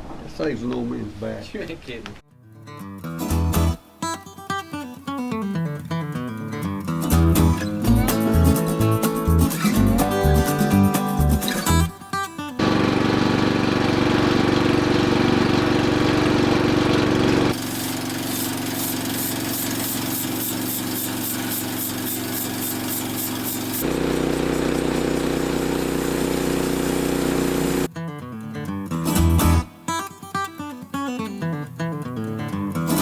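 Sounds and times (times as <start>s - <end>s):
sawmill engine running: 12.6s - 27.9s.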